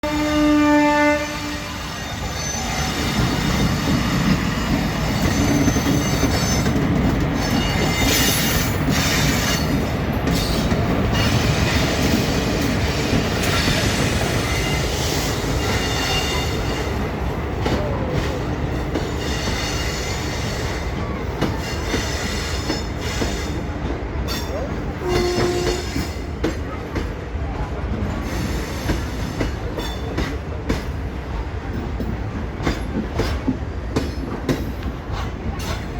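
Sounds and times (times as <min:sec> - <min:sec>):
train horn blast: 0:00.0 - 0:02.2, 0:25.0 - 0:26.1
train wheels rumbling on rail: 0:00.0 - 0:35.9.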